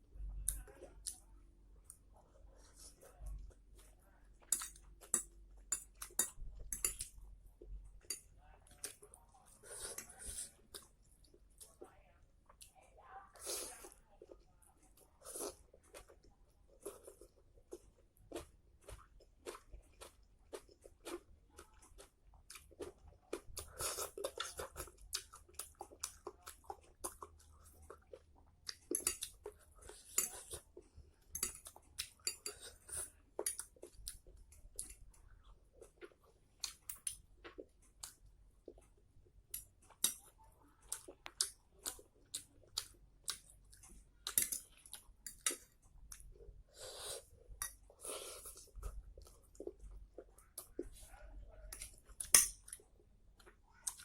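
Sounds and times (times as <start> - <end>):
person chewing noodles: 13.4 - 51.1, 51.7 - 54.0.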